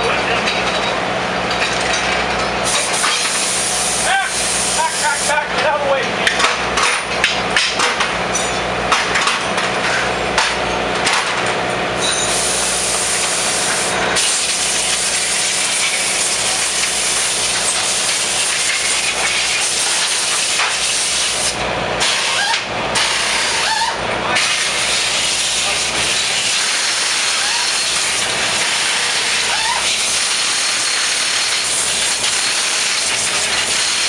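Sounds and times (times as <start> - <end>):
metal tools clattering: 0.4 - 3.4, 6.3 - 10.1
loud steady hiss: 2.7 - 5.4, 12.3 - 18.7.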